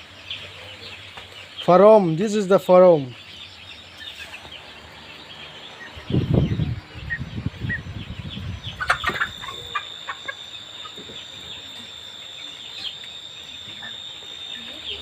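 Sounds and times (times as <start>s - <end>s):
chickens clucking and peeping: 0.0s - 15.0s
steady high whine: 3.8s - 15.0s.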